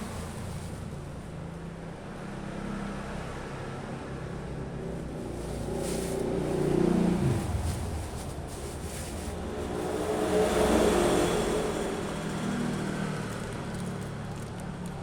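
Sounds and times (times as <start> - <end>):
vehicle engine passing: 4.8 - 14.6.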